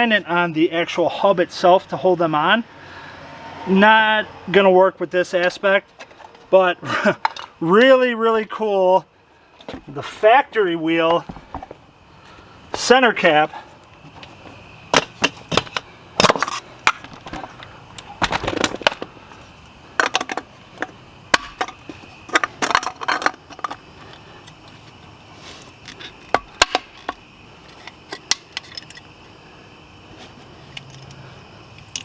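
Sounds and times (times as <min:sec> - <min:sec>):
wheel caps clicking and knocking: 0:12.7 - 0:19.1, 0:20.0 - 0:25.0, 0:25.8 - 0:29.1, 0:31.8 - 0:32.0.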